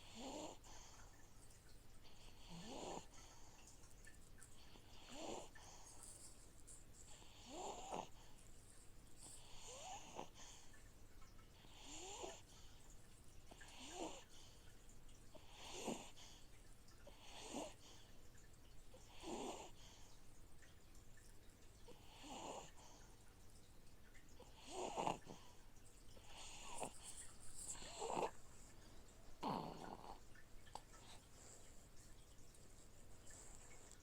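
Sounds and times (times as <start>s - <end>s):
soft snoring: 0.0s - 10.8s, 11.5s - 12.9s, 13.5s - 14.6s, 15.3s - 16.4s, 17.0s - 18.1s, 19.0s - 20.2s, 21.9s - 23.2s, 24.4s - 34.0s
aquarium filter hum: 0.0s - 34.0s.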